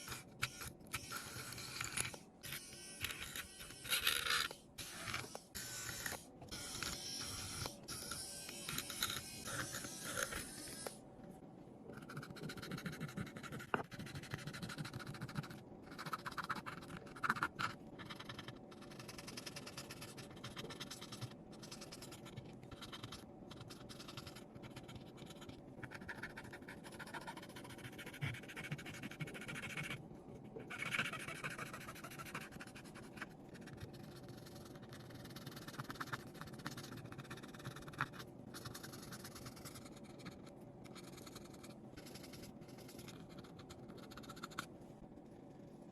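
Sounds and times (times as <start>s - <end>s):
small tools scraping phone parts: 0.0s - 11.0s.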